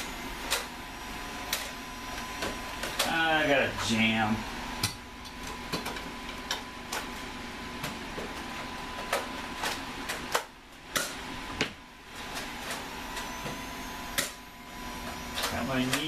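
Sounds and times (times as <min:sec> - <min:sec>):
faint high hum: 0:00.0 - 0:16.0.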